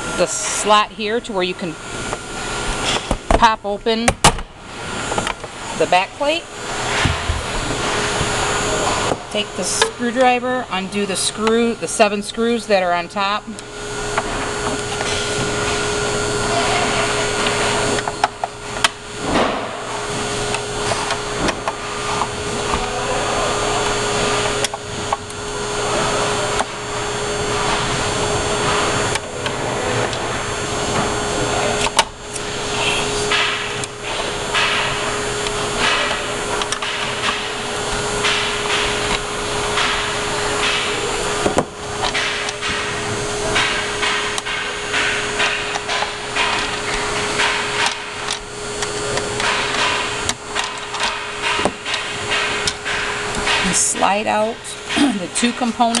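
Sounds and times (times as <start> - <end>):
steady whirring hum: 0.0 - 56.0
parts being handled clicks: 43.6 - 53.6.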